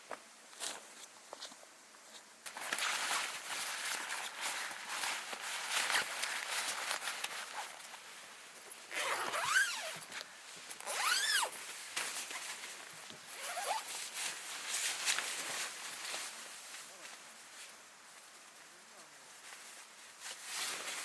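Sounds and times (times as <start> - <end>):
zipper being pulled: 8.9 - 10.0, 10.8 - 11.6, 13.4 - 14.0.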